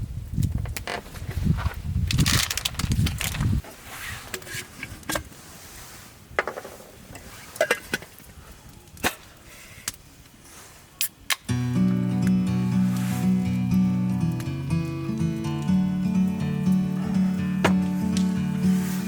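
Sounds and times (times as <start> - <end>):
rustling handling noise: 0.8 - 8.4, 11.9 - 14.6, 15.2 - 19.0
guitar music: 11.5 - 19.0.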